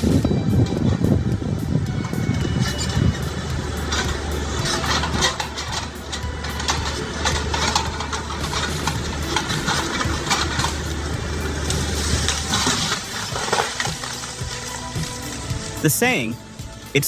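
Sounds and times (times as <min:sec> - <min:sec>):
heavy machine engine running: 0:00.0 - 0:17.0
sharp cracks and crunches: 0:04.7 - 0:15.7.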